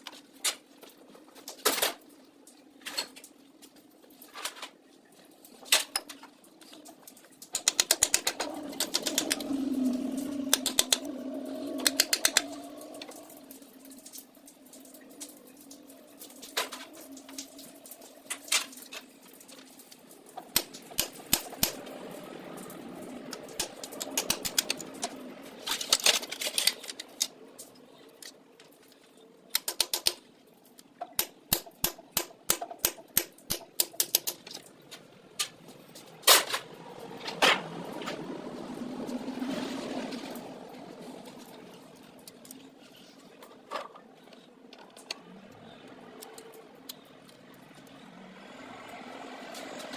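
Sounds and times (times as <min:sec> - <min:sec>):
metal tools clicking and knocking: 0:07.5 - 0:09.4, 0:10.5 - 0:11.1, 0:11.8 - 0:12.5, 0:20.5 - 0:21.8, 0:23.5 - 0:25.1, 0:29.5 - 0:30.2, 0:31.0 - 0:34.6.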